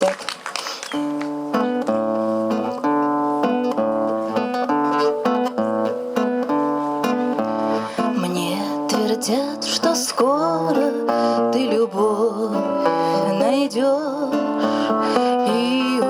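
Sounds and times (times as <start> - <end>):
acoustic guitar strumming chords: 1.0 - 16.0.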